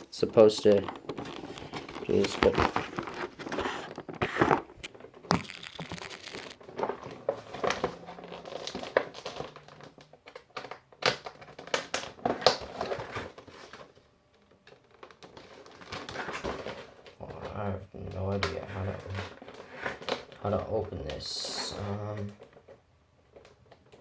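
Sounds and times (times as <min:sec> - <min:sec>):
plastic packaging crinkling: 0:00.0 - 0:22.7.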